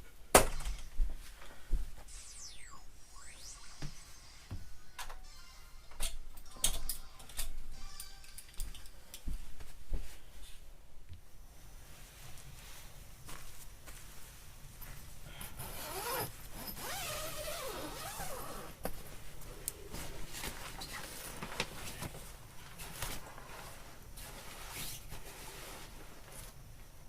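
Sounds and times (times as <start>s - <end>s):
zipper-like scrapes: 15.6s - 18.8s.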